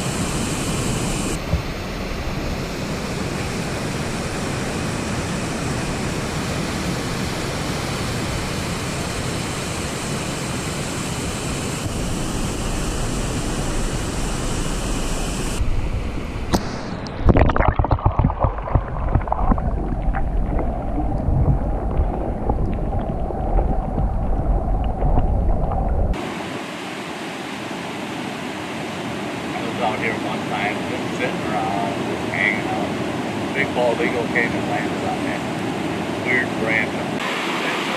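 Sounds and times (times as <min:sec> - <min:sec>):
wind buffeting microphone: 0:15.6 - 0:26.2
waterfall rushing: 0:26.1 - 0:37.9.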